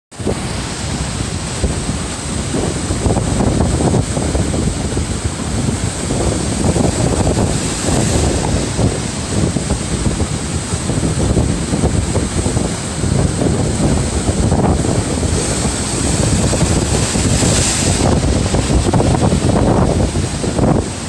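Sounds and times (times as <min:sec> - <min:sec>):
sea waves washing ashore: 0:00.1 - 0:21.0
wind buffeting microphone: 0:00.1 - 0:21.0.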